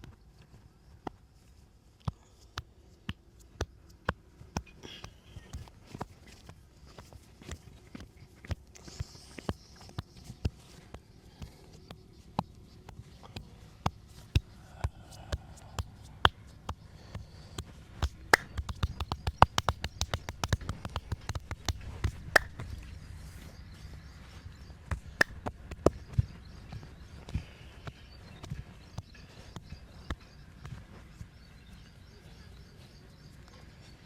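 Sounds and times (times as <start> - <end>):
hands slapping and tapping skin: 2.0 - 22.9, 24.9 - 26.3.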